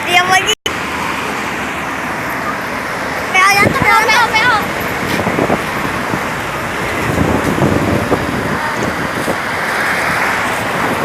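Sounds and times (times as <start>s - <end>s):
passing vehicle engine and tyres: 0.0s - 11.0s.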